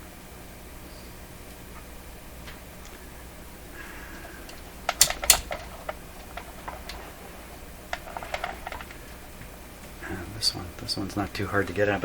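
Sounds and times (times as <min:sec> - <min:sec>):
steady low hum: 0:00.0 - 0:12.0
tools clicking and tapping: 0:04.5 - 0:07.1.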